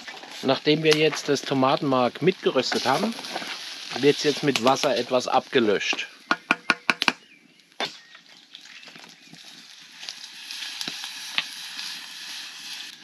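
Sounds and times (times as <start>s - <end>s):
food sizzling in a pot: 1.5s - 5.6s, 8.6s - 13.0s
sharp knocks: 6.3s - 7.2s.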